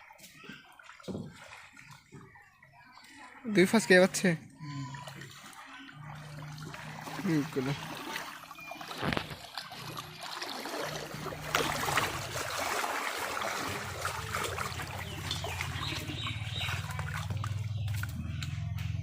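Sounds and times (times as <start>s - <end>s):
shallow water splashing: 0.0s - 18.6s
low motor hum: 13.4s - 19.0s.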